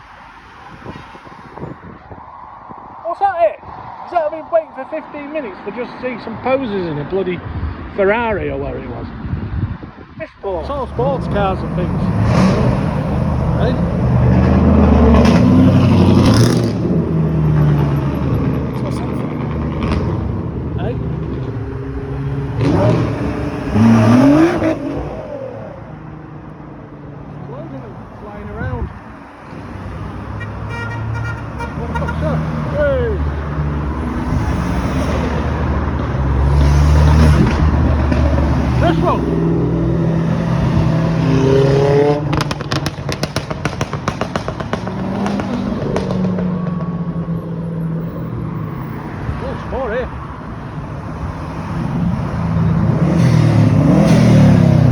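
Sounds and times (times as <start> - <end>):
car accelerating: 10.5 - 54.9
sports cars driving past: 10.5 - 54.9
exhaust pops and crackles: 42.2 - 47.0.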